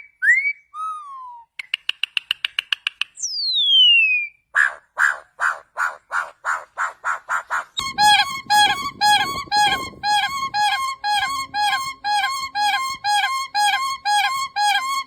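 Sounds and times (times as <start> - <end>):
bird calling flute-like notes: 7.8 - 15.0.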